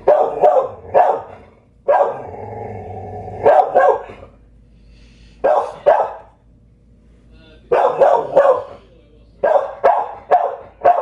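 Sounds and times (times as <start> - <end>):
dog barking excitedly: 0.0 - 2.3, 3.4 - 4.2, 5.4 - 6.4, 7.7 - 8.8, 9.4 - 11.0.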